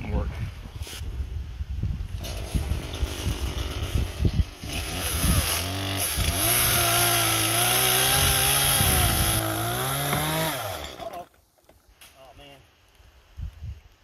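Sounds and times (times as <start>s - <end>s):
two-stroke chainsaw running: 2.2s - 11.2s.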